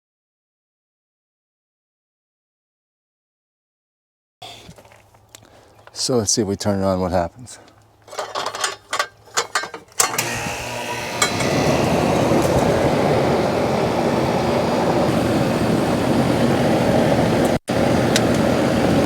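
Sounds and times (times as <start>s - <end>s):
air conditioner unit humming: 7.5s - 19.0s.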